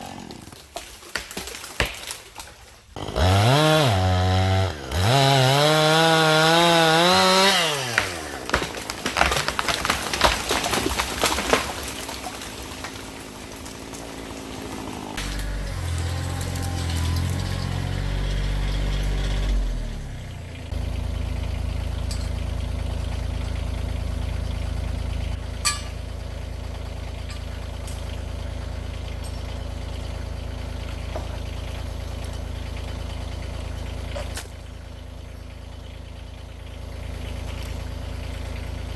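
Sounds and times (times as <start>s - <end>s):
chainsaw running: 0.0s - 0.6s, 3.0s - 34.9s
wood cracking and snapping: 0.1s - 18.0s
engine idling: 8.0s - 38.9s.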